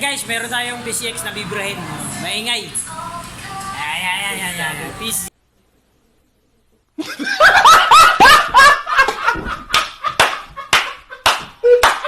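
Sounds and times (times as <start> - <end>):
person laughing: 7.0 - 11.8
sharp slaps: 9.4 - 12.0.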